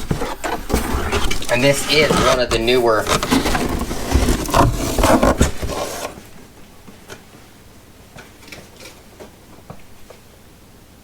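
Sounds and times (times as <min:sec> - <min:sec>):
packaging rustling: 0:00.0 - 0:06.4.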